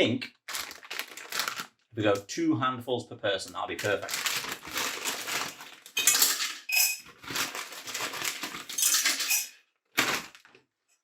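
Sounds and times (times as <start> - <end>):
dry pasta clattering into saucepan: 4.1 - 10.4.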